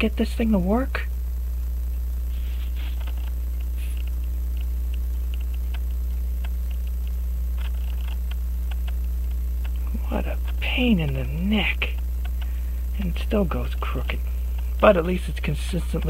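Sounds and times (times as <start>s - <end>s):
steady low hum: 0.0s - 16.0s
faint clicks: 2.9s - 11.2s, 11.9s - 12.6s.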